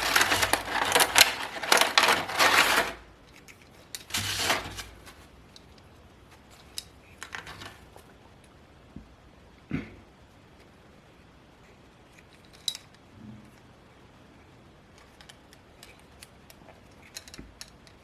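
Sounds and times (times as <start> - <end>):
plastic and cardboard crinkling: 0.0 - 3.1, 4.0 - 5.4, 6.3 - 8.1.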